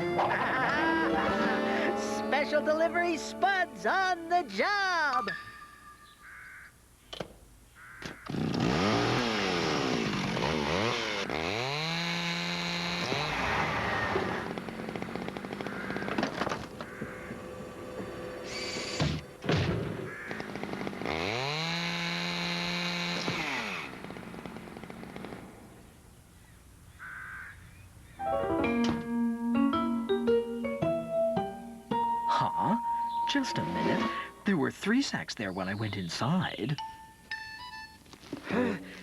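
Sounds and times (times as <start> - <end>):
chainsaw motor revving: 8.2 - 19.4, 20.1 - 25.8.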